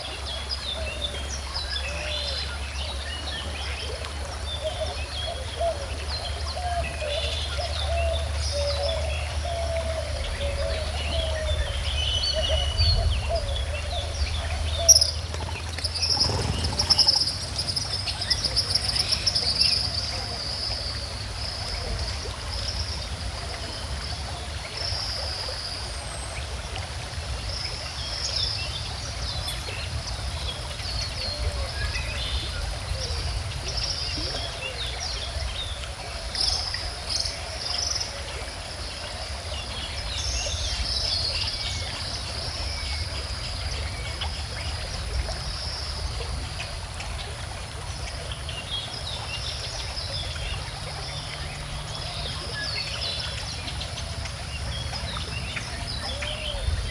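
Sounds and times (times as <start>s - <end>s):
stream flowing: 0.0s - 56.9s
birds chirping and singing: 4.5s - 20.6s.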